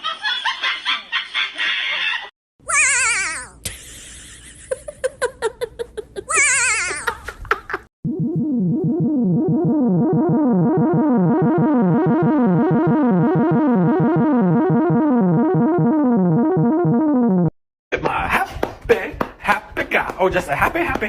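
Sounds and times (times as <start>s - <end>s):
music with rising note runs: 8.1s - 17.5s.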